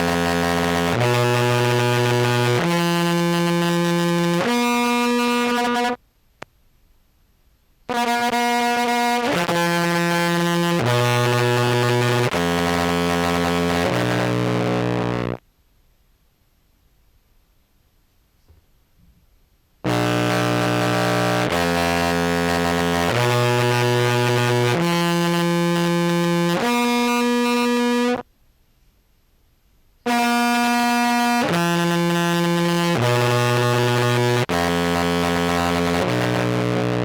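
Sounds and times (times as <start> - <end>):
distorted clarinet held notes: 0.0 - 6.0, 7.9 - 15.4, 19.9 - 28.2, 30.1 - 37.0.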